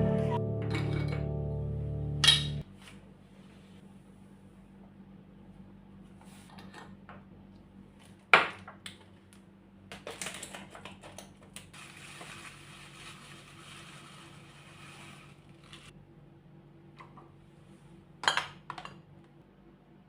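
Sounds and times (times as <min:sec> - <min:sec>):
low hum: 0:00.0 - 0:05.9.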